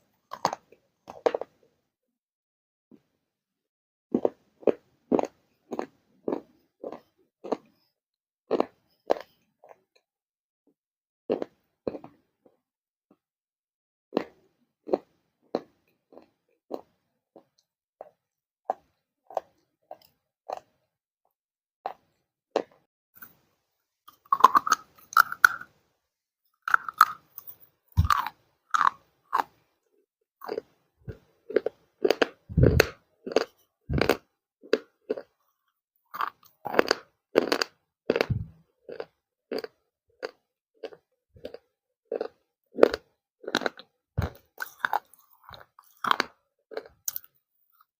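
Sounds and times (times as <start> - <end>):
person chewing crunchy clay: 0.3 - 1.5, 4.1 - 7.8, 8.5 - 9.8, 14.2 - 20.8, 21.9 - 23.4, 24.1 - 25.7, 26.6 - 29.7, 30.4 - 35.4, 36.1 - 47.9.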